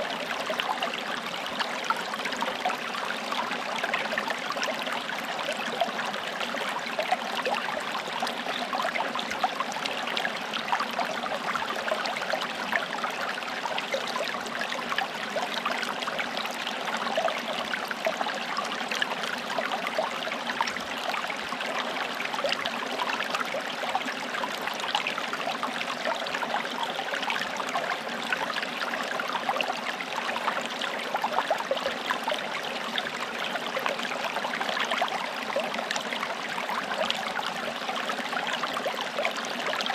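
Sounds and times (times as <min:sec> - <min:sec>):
forest stream flowing: 0:00.0 - 0:39.9.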